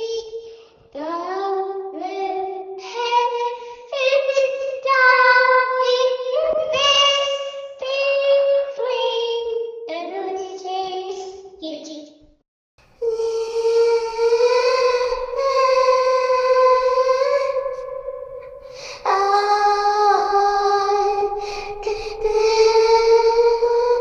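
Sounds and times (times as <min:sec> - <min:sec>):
little girl singing wordless tune: 0:00.0 - 0:12.2, 0:13.0 - 0:24.0.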